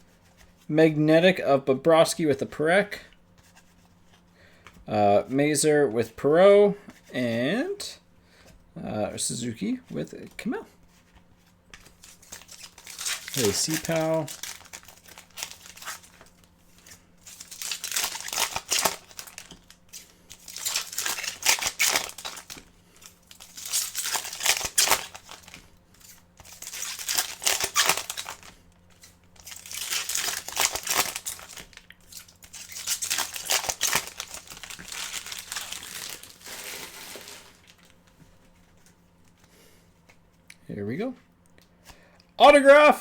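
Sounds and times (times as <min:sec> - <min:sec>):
foil card wrappers crinkling and tearing: 0:11.0 - 0:39.0.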